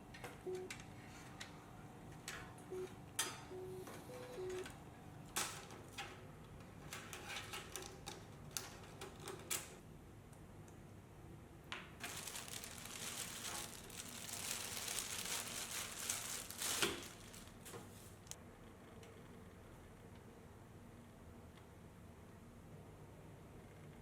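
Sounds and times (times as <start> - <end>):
crinkling rustle of packaging: 12.0 - 18.4.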